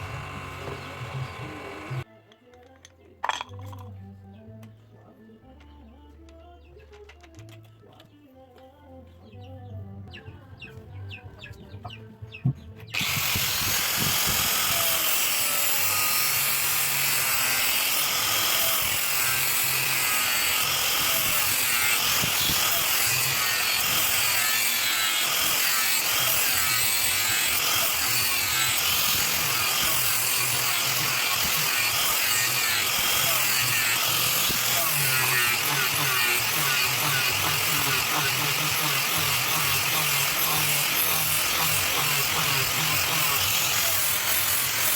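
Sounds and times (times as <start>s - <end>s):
electric grinder on steel: 0.0s - 2.1s, 13.0s - 44.9s.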